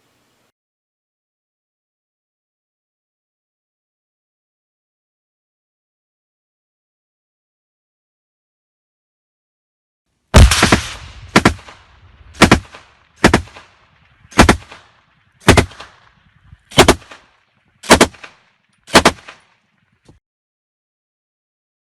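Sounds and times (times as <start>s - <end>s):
gunshots: 10.4s - 19.6s.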